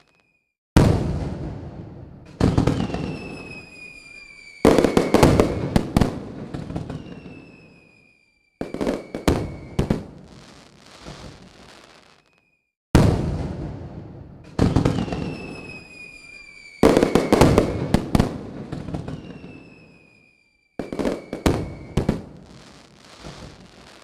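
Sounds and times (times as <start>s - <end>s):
fireworks crackling: 0.0s - 1.6s, 2.2s - 13.6s, 14.4s - 24.0s
fireworks booming bursts: 0.0s - 24.0s
high whistles sliding down: 2.8s - 5.6s, 6.8s - 9.9s, 14.9s - 17.8s, 19.0s - 22.0s.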